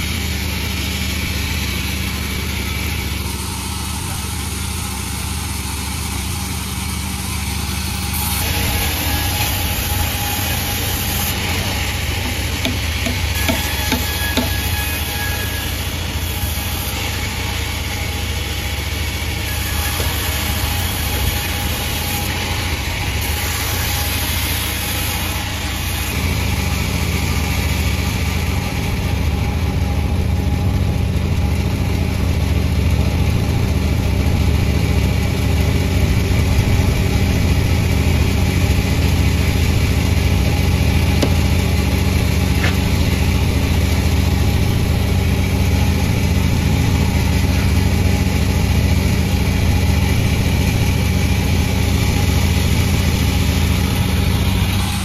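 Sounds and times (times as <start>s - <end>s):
sawmill engine running: 0.0s - 55.0s.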